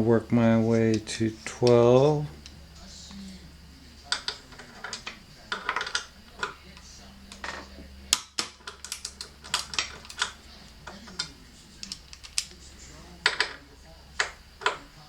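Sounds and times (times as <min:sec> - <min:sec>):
torque wrench clicking: 0:04.1 - 0:12.6.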